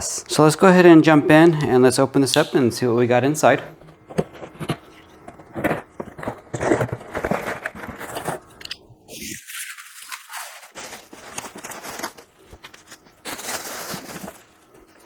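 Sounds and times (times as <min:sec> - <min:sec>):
cardboard and plastic packaging crackling: 0:04.0 - 0:15.0.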